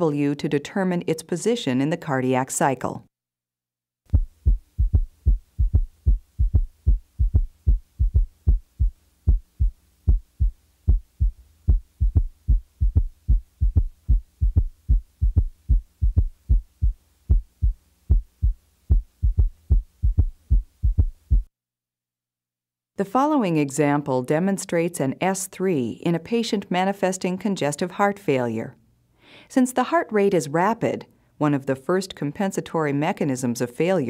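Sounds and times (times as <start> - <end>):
heartbeat thuds: 4.1 - 21.5.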